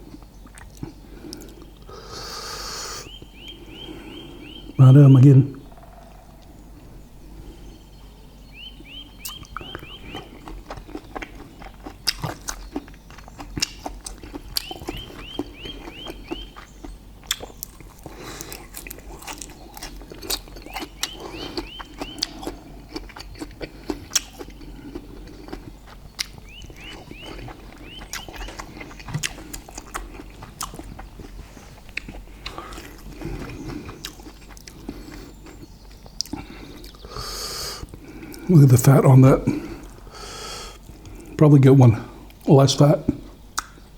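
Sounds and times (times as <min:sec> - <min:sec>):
chewing with wet mouth clicks: 0:00.1 - 0:01.9, 0:09.2 - 0:38.5, 0:43.5 - 0:43.8
high chirps: 0:07.8 - 0:10.6.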